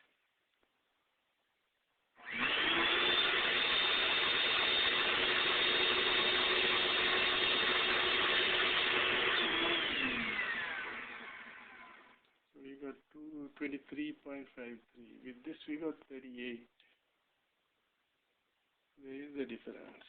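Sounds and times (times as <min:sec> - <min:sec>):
vacuum cleaner motor whine: 0:02.2 - 0:12.2.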